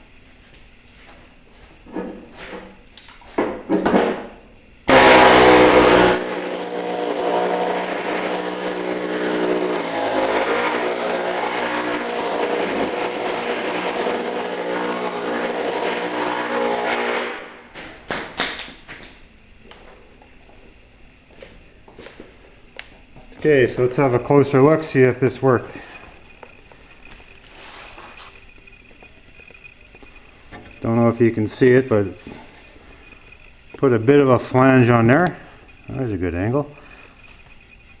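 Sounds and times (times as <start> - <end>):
power tool flanging sheet metal: 4.9 - 17.6.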